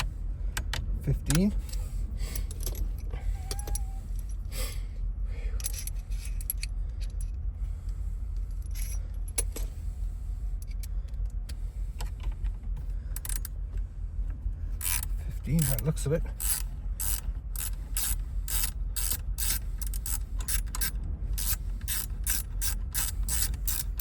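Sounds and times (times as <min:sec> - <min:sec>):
low hum: 0:00.0 - 0:24.0
metal tools and keys clinking: 0:01.1 - 0:04.5, 0:05.6 - 0:07.4, 0:08.5 - 0:09.7, 0:14.8 - 0:24.0.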